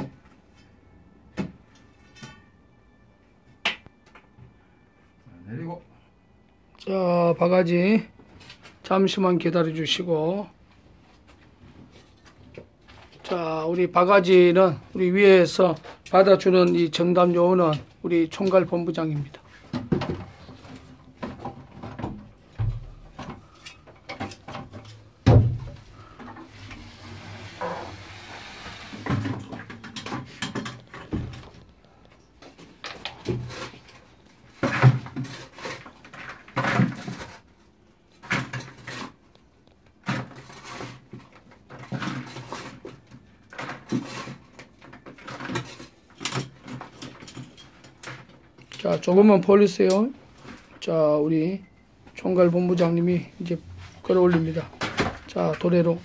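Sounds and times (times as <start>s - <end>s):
bucket being handled: 16.9s - 39.3s
hiss: 26.9s - 29.1s.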